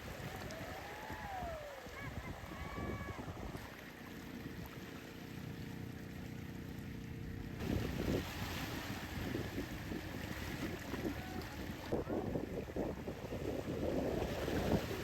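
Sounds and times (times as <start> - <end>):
wind buffeting microphone: 0.0 - 3.7, 7.6 - 15.0
surf rushing: 0.0 - 3.8, 7.6 - 15.0.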